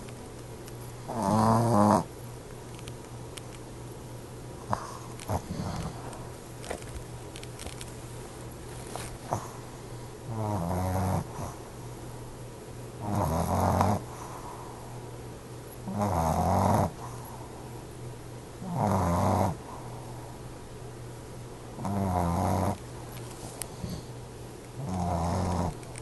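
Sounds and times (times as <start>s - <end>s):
person snoring: 1.1s - 2.1s, 4.7s - 6.1s, 10.3s - 11.5s, 15.9s - 17.0s, 24.8s - 25.8s.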